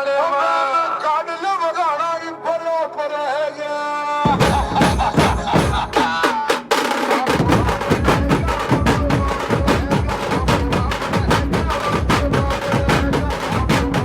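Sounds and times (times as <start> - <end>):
dj music over sound system: 4.3 - 6.5, 7.3 - 14.0
fast drum beat with heavy bass: 4.3 - 14.0.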